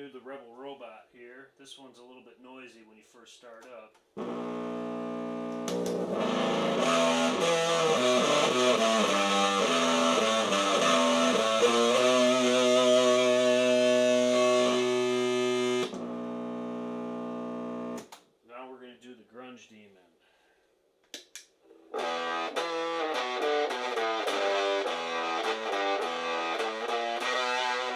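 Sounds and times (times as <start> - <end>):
electric guitar through amp: 4.2 - 18.0, 21.9 - 27.9.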